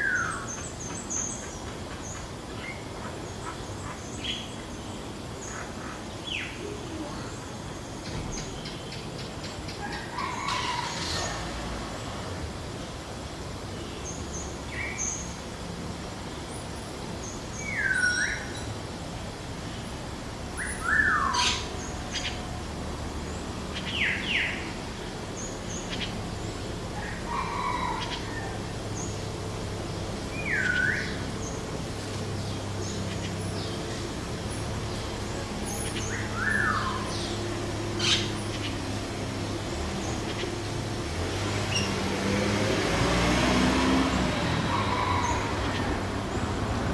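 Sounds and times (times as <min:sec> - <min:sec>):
birds whistling: 0:17.6 - 0:18.7, 0:20.6 - 0:22.4, 0:30.3 - 0:31.6, 0:35.6 - 0:38.9.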